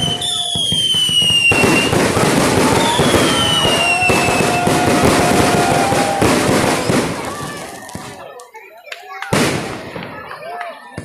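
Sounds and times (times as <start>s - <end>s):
whistling fireworks: 0.0s - 8.2s
fireworks crackling and banging: 0.0s - 11.0s.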